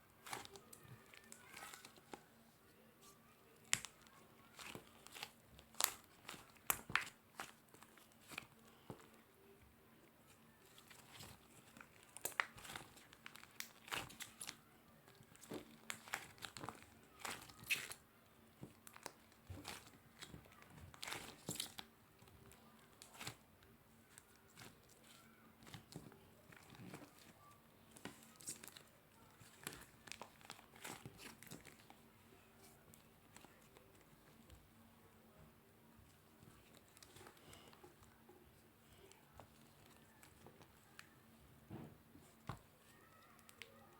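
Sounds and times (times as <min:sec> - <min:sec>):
slime popping and crackling: 0:03.6 - 0:09.0, 0:10.6 - 0:18.0, 0:24.1 - 0:32.1.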